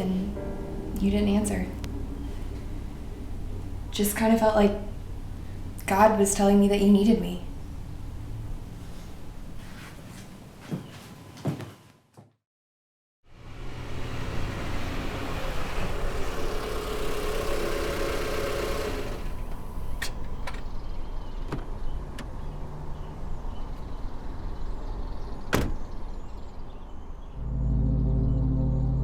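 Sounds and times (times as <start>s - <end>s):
deep low music: 0.0s - 3.9s, 27.4s - 29.0s
vehicle rushing noise: 13.3s - 20.1s.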